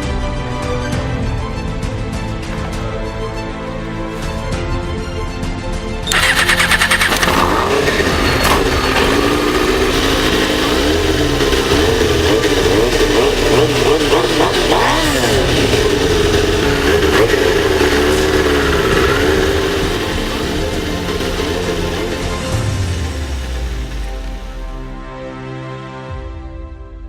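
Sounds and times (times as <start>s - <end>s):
motorcycle engine starting: 6.1s - 25.0s
engine revving: 6.1s - 25.3s.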